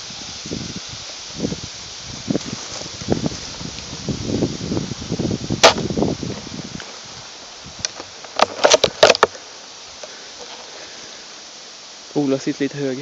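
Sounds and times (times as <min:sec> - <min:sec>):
wind buffeting microphone: 0:00.0 - 0:09.2.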